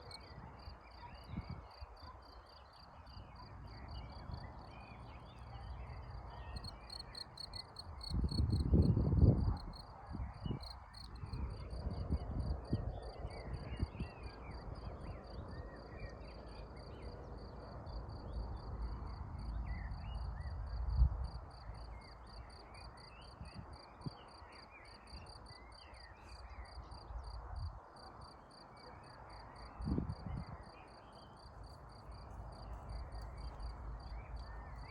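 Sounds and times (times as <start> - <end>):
frogs calling: 6.6 - 8.7
crickets trilling: 6.6 - 9.0.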